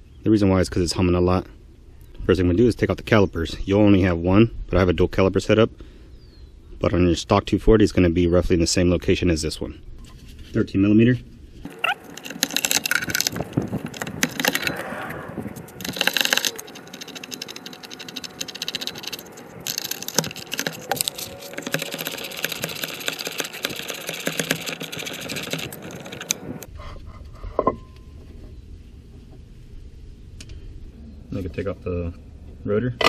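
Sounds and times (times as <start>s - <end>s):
ratchet wrench clicking: 15.8s - 26.4s.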